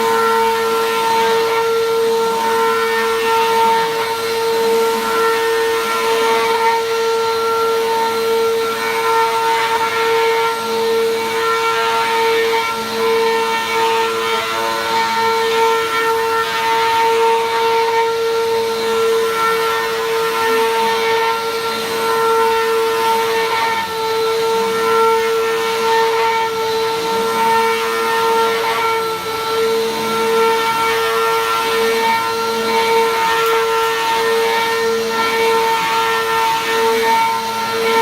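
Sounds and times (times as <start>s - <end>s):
vacuum cleaner running: 0.0s - 38.0s.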